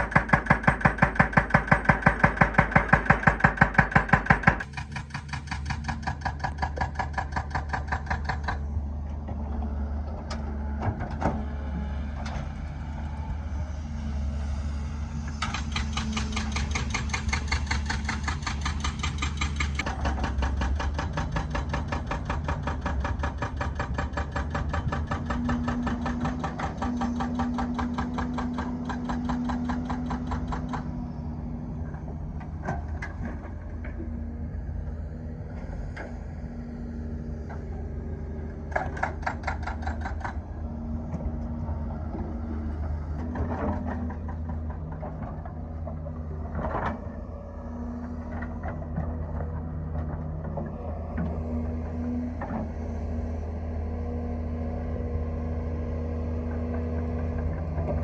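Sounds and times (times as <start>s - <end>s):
hydraulic breaker hammering: 0.0s - 8.6s
diesel engine running: 0.0s - 58.0s.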